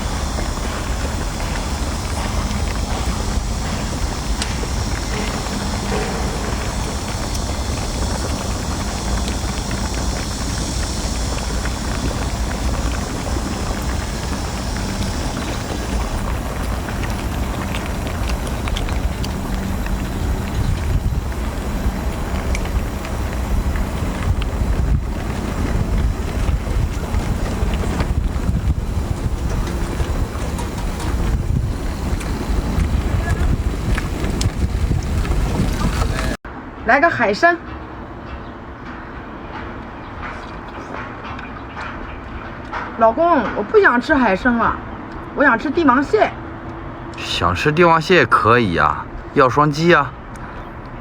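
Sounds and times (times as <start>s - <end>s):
wind buffeting microphone: 0.0s - 36.4s.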